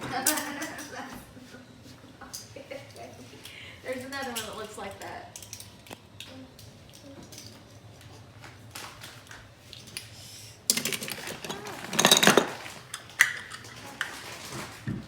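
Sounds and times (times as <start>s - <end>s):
utensils and dishes clattering: 0.0s - 1.1s, 10.7s - 14.8s.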